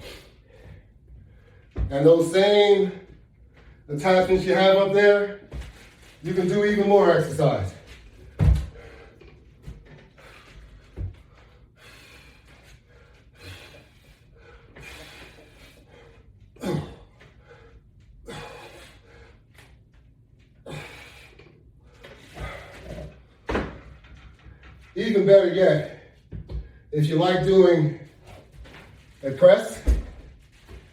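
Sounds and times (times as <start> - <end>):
man breathing hard: 0.0 - 1.9, 8.6 - 19.8, 20.6 - 23.4
dull thumps of gym equipment: 8.2 - 9.0, 29.7 - 30.4.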